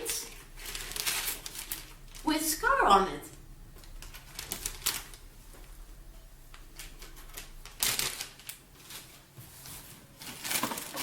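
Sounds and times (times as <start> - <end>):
packaging rustling and crinkling: 0.0 - 2.3, 3.8 - 5.8, 6.5 - 11.0.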